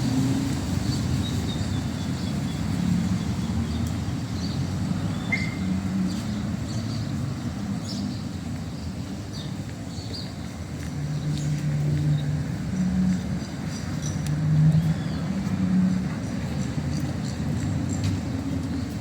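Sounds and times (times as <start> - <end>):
road traffic rumble: 0.0 - 19.0
small birds chirping: 0.7 - 15.6.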